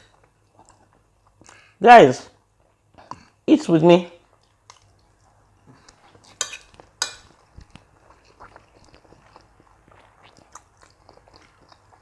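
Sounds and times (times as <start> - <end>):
person eating: 0.0 - 1.8, 4.2 - 12.0
cutlery clinking against plate: 6.3 - 7.4.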